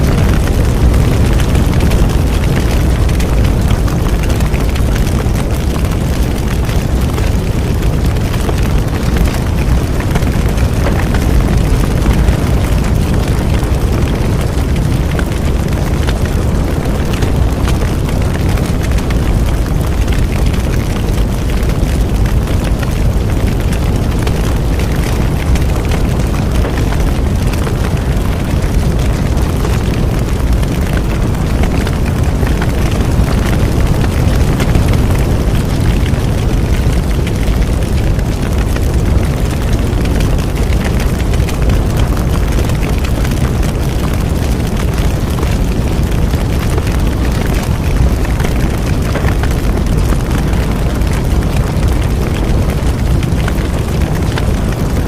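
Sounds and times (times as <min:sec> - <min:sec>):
burning wood crackling and popping: 0:00.0 - 0:55.0
low rumble of flames: 0:00.0 - 0:55.0.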